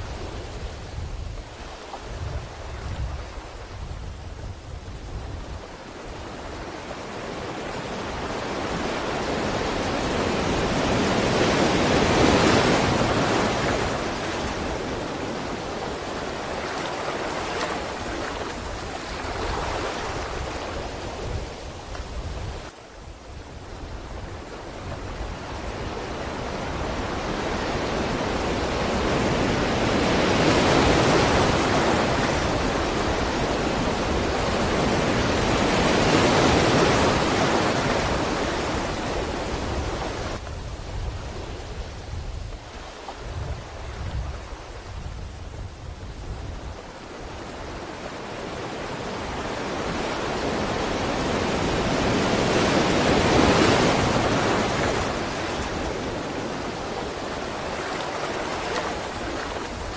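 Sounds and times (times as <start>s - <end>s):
sea waves surging: 5.0s - 59.9s.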